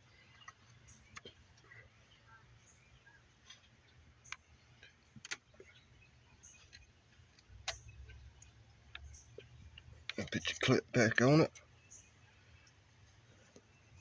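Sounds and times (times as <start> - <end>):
faint sharp clicks and taps: 0.2 - 1.8.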